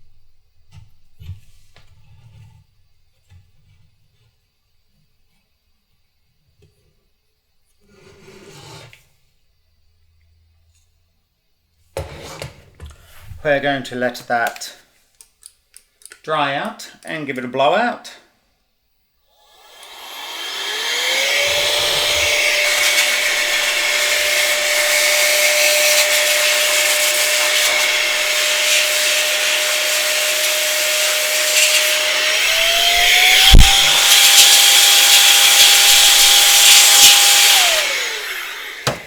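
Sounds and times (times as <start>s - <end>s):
electric air blower whine: 19.4s - 39.0s.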